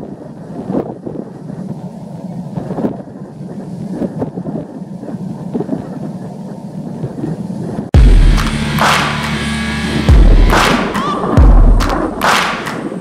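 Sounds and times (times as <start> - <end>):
wind buffeting microphone: 0.0 - 8.3.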